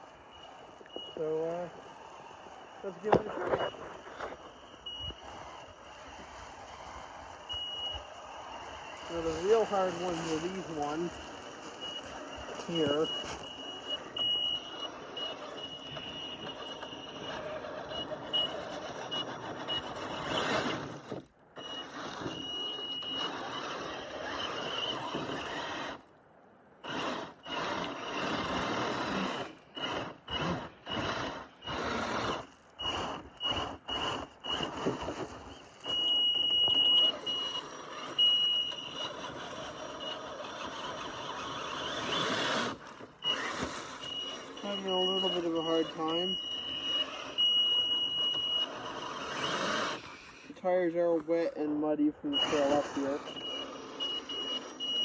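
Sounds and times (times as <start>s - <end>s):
high-pitched whine: 0.0s - 20.7s
electric motor whining: 0.0s - 26.1s, 26.8s - 50.6s, 52.3s - 55.0s.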